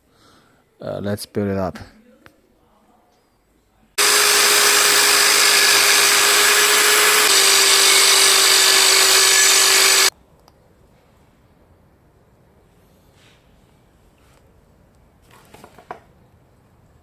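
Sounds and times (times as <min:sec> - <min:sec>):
power drill running: 0:04.0 - 0:10.1.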